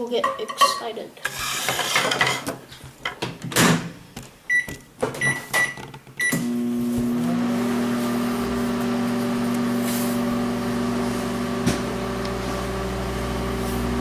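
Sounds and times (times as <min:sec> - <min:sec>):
microwave keypad beeping: 0:04.5 - 0:06.5
microwave oven humming: 0:06.2 - 0:14.0.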